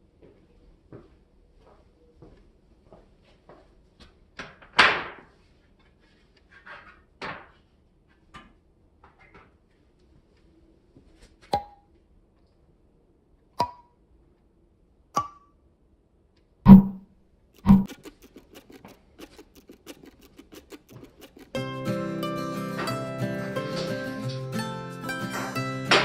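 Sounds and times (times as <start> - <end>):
objects knocking and clacking: 17.6 - 21.6.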